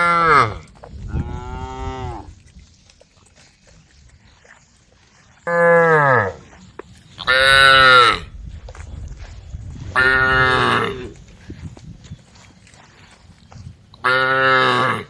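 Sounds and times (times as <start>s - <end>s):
cows mooing: 0.0s - 2.4s, 5.4s - 8.3s, 9.9s - 11.2s, 14.0s - 15.0s.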